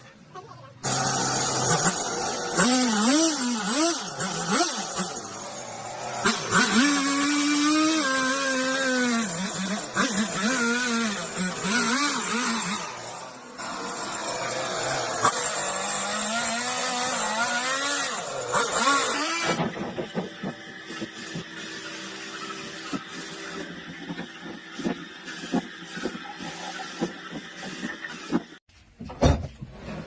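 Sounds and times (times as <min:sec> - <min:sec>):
power tool cutting wood: 0:00.8 - 0:28.6.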